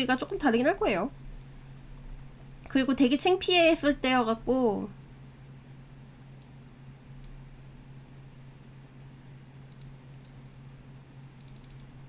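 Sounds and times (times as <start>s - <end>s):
low electrical hum: 0.0s - 12.0s
keyboard clicking: 9.7s - 10.4s, 11.4s - 11.9s.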